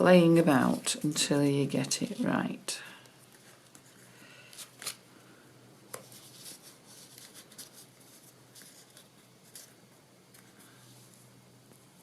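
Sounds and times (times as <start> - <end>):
paper and card rustling on table: 3.3 - 5.0, 5.9 - 10.8.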